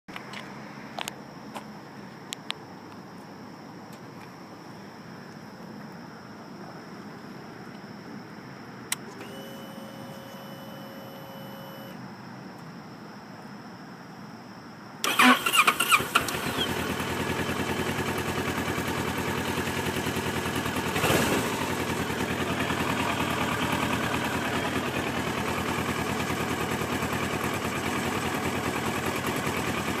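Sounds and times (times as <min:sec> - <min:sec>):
motorcycle engine starting and idling: 0:15.0 - 0:30.0.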